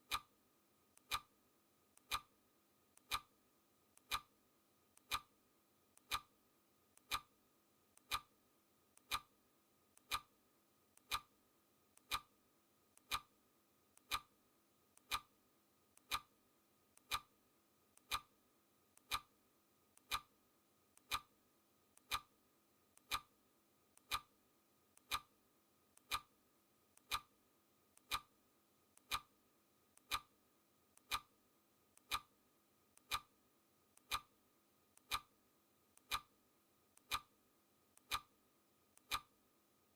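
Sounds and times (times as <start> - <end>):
clock ticking: 0.1 - 0.3, 1.0 - 1.3, 2.0 - 2.3, 3.0 - 3.3, 4.0 - 4.3, 5.0 - 5.3, 6.0 - 6.3, 7.0 - 7.3, 8.0 - 8.3, 9.0 - 9.3, 10.0 - 10.3, 11.0 - 11.3, 12.0 - 12.3, 13.0 - 13.3, 14.0 - 14.3, 15.0 - 15.3, 16.0 - 16.3, 17.0 - 17.3, 18.0 - 18.3, 19.0 - 19.3, 20.0 - 20.3, 21.0 - 21.3, 22.0 - 22.3, 23.0 - 23.3, 24.0 - 24.3, 25.0 - 25.3, 26.0 - 26.3, 27.0 - 27.3, 28.0 - 28.3, 29.0 - 29.3, 30.0 - 30.3, 31.0 - 31.3, 32.0 - 32.3, 33.0 - 33.3, 34.0 - 34.3, 35.0 - 35.3, 36.0 - 36.3, 37.0 - 37.3, 38.0 - 38.3, 39.0 - 39.3.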